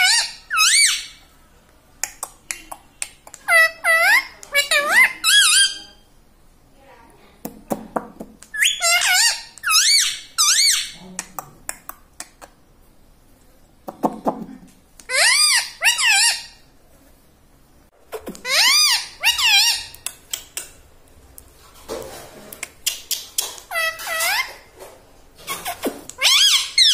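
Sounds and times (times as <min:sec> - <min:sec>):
parrot squawking: 0:00.0 - 0:01.2, 0:03.4 - 0:06.0, 0:08.5 - 0:11.0, 0:15.1 - 0:16.6, 0:18.2 - 0:20.0, 0:22.8 - 0:24.7, 0:25.4 - 0:26.9.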